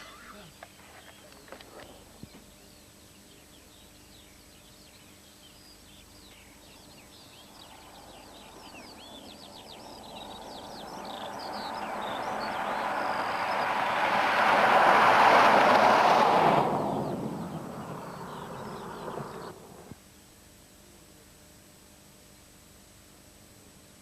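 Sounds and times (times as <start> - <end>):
small birds chirping: 0.0 - 14.2, 16.5 - 20.0
vehicle approaching: 7.5 - 19.9.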